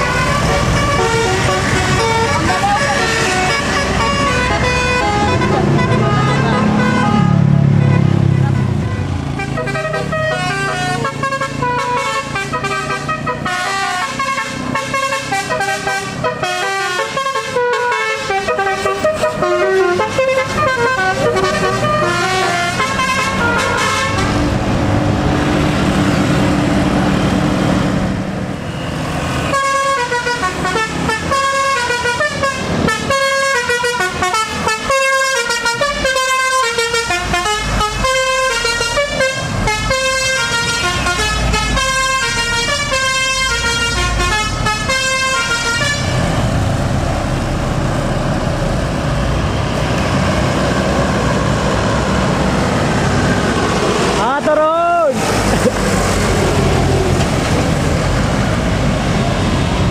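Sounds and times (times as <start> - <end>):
bus horn playing a melody: 0.0 - 24.6, 29.4 - 46.4
vehicle running noise: 0.0 - 59.9.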